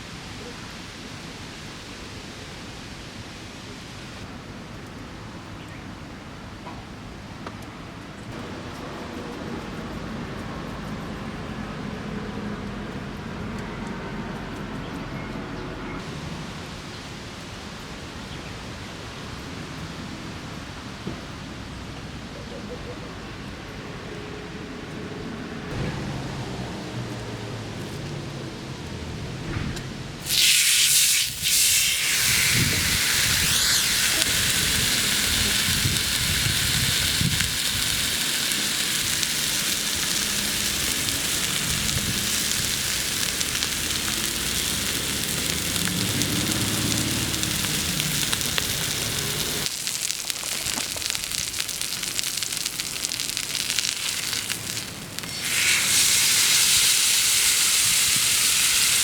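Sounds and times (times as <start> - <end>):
steak sizzling over campfire: 30.2 - 59.0.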